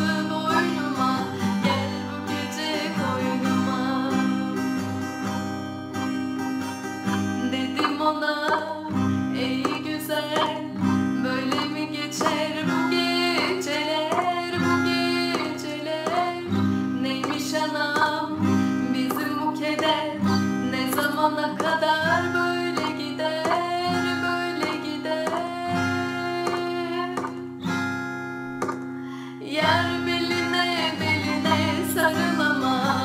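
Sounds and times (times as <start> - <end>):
woman singing folk song: 0.0 - 28.2, 29.1 - 33.0
strummed acoustic guitar: 0.0 - 33.0.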